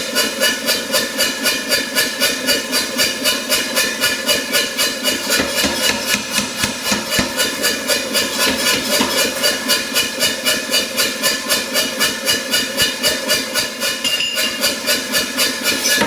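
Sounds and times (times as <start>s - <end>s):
power hammer striking: 3.8s - 10.5s, 12.0s - 16.0s.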